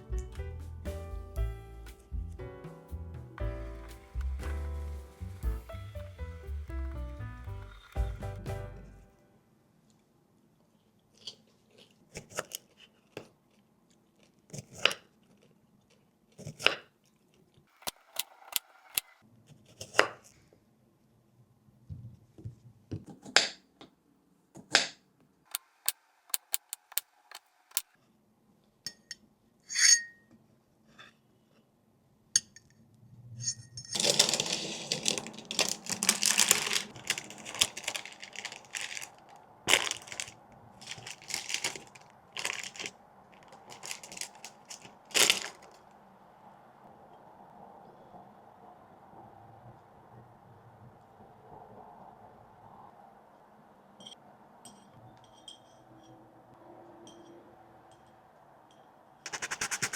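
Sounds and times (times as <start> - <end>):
continuous handling noise: 33.4 - 46.0.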